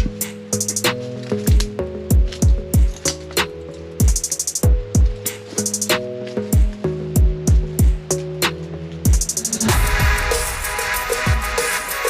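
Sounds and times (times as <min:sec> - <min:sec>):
music with sustained tones: 0:00.0 - 0:12.0
deep pitch-dropping bass drum hits: 0:09.1 - 0:11.6.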